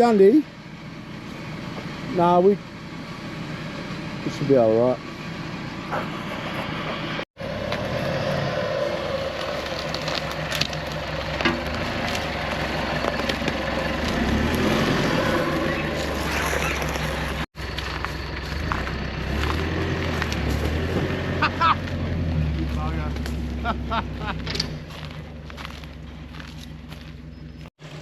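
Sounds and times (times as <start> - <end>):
vehicle engine running: 0.0 - 28.0
crackles and knocks: 8.8 - 14.6.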